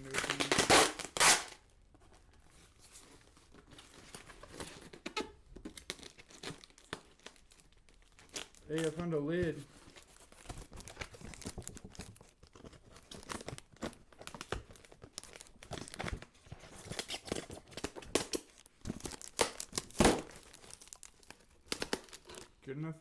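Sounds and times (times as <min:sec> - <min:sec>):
cardboard box being torn open: 0:00.0 - 0:01.6.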